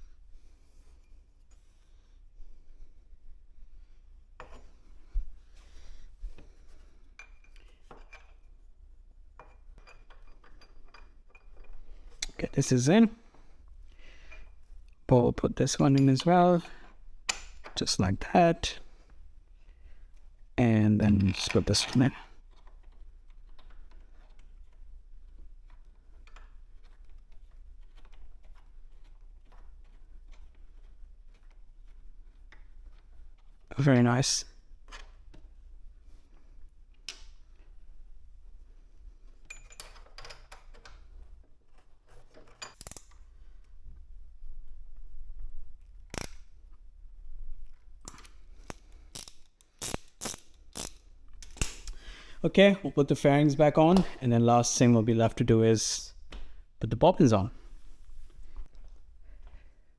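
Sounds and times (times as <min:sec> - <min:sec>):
tools and hardware clicking: 0:07.2 - 0:08.5, 0:09.4 - 0:12.4, 0:39.2 - 0:43.8, 0:45.8 - 0:46.8, 0:48.0 - 0:52.0
small metal parts clicking: 0:41.7 - 0:43.7, 0:45.8 - 0:46.6, 0:48.0 - 0:52.0.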